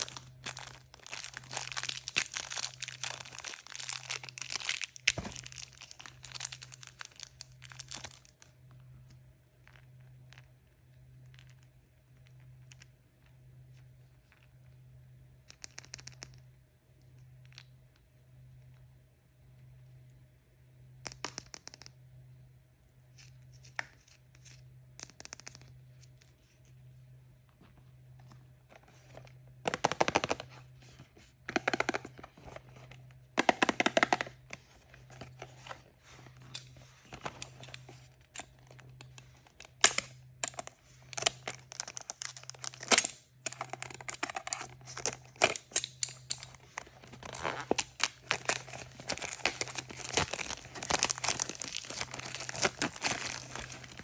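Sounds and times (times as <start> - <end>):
handling noises: 0.0 - 8.2, 43.5 - 54.0
packaging tearing: 0.0 - 8.4, 36.5 - 54.0
packaging crinkling: 0.0 - 8.5, 28.7 - 54.0.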